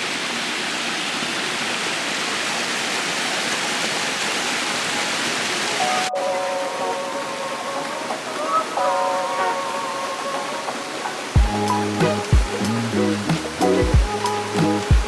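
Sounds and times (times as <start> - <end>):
waterfall pouring into pool: 0.0 - 6.1
held musical tones: 5.8 - 15.0.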